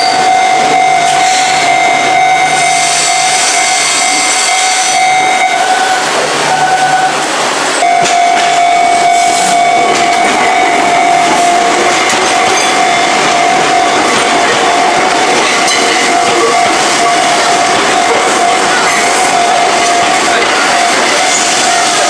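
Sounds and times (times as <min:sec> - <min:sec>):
level-crossing alarm ringing: 0:00.0 - 0:22.0
train wheels on rails: 0:00.0 - 0:22.0
sharp rail clacks: 0:09.2 - 0:22.0.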